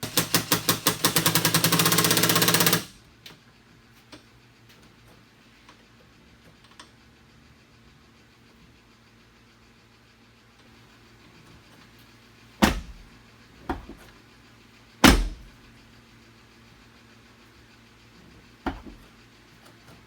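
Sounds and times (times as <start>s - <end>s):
sharp clunks on car door: 12.6s - 13.1s, 13.7s - 14.1s, 15.0s - 15.6s, 18.6s - 19.1s.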